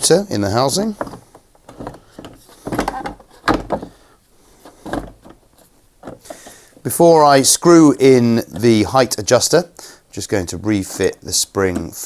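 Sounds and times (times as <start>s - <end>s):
handling and scraping: 0.6s - 9.3s
plastic knocks and clunks: 0.7s - 6.6s, 8.4s - 9.0s.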